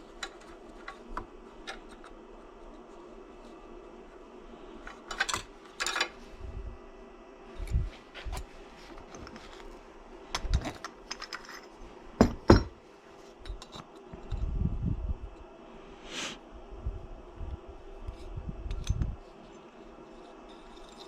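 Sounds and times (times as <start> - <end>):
metal parts and tools clinking: 4.9 - 6.2, 10.3 - 12.7.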